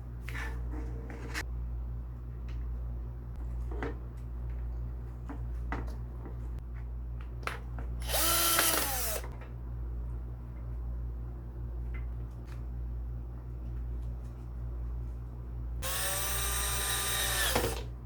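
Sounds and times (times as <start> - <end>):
steady low hum: 0.0 - 18.0
power tool motor burst: 8.0 - 9.3, 15.8 - 17.9.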